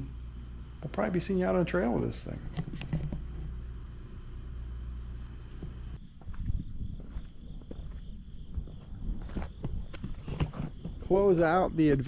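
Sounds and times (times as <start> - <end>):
continuous high buzz: 0.0 - 12.0
steady low hum: 0.0 - 12.0
insects chirping in pulses: 6.0 - 12.0.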